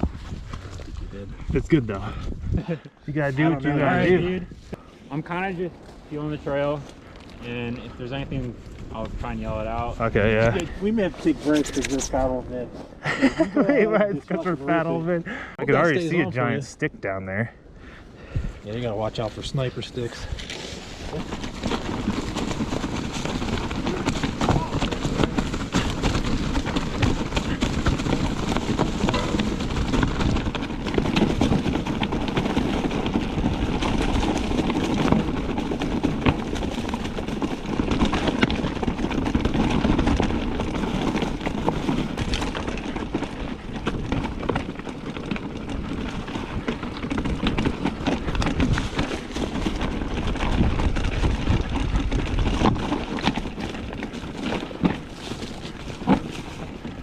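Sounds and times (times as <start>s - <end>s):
bike tyres crunching over rocks: 0.0s - 16.7s, 17.8s - 57.0s
bike frame knocking: 21.0s - 38.2s.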